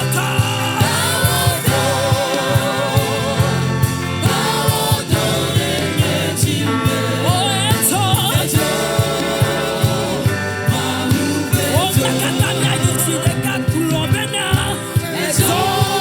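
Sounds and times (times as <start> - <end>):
gospel singing and choir: 0.0 - 16.0
steady drum beat: 0.0 - 16.0.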